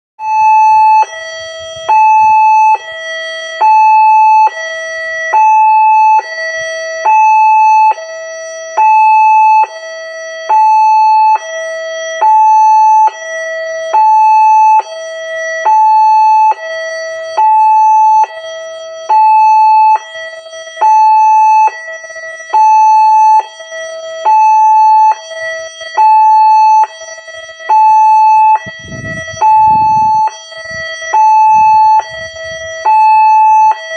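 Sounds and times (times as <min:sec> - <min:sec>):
level-crossing warning alarm: 0:00.2 - 0:33.9
low rumble: 0:28.6 - 0:32.8.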